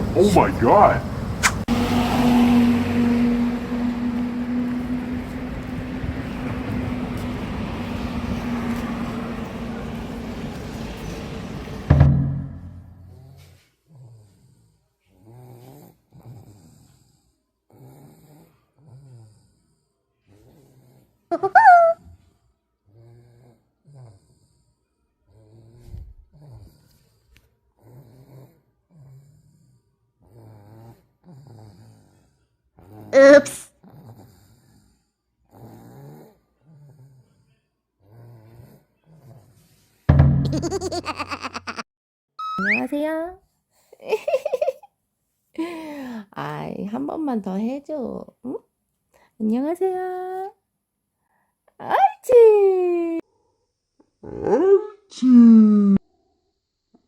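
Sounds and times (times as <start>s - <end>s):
mock snoring: 13.0s - 19.7s, 20.3s - 21.2s, 22.9s - 24.6s, 25.3s - 26.8s, 27.8s - 32.2s, 32.8s - 34.8s, 35.5s - 37.4s, 38.0s - 39.6s
person imitating snoring: 32.9s - 34.3s
loud laughter: 40.5s - 41.8s.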